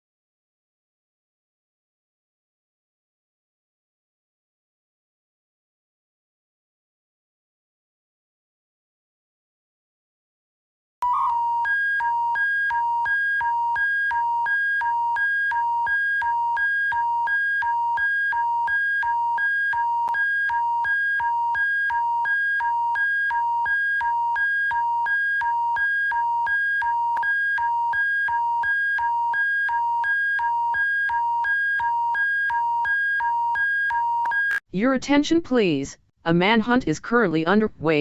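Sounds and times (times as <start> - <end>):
two-tone electronic alert: 11.0 - 34.6.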